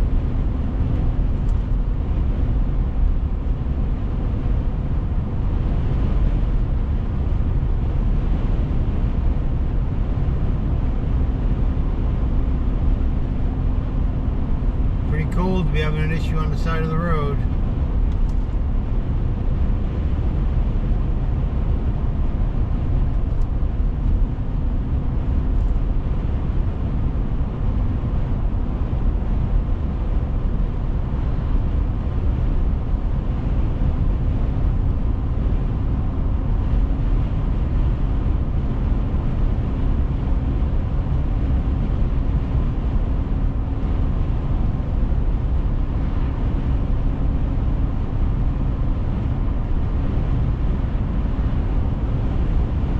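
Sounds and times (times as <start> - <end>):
faint hum: 0.0 - 20.1
car road and engine rumble: 0.0 - 52.9.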